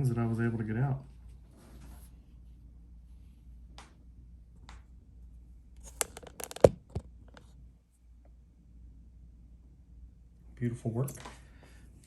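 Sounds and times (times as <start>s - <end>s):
hands handling small objects: 5.8s - 7.5s.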